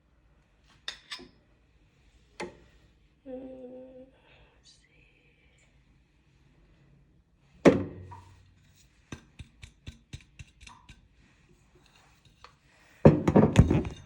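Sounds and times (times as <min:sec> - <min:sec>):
utensils tapping on glass: 0:09.1 - 0:11.0
glass jar knock on counter: 0:13.1 - 0:14.0.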